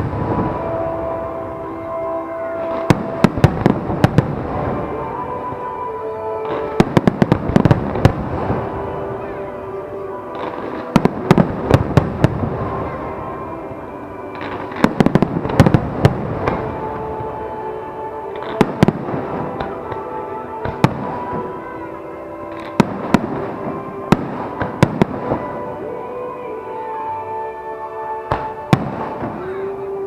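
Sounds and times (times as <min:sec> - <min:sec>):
background music: 0:00.0 - 0:30.0
fireworks bursting in sharp cracks: 0:02.6 - 0:05.3, 0:06.4 - 0:09.5, 0:10.3 - 0:13.6, 0:14.3 - 0:25.8, 0:28.3 - 0:29.8.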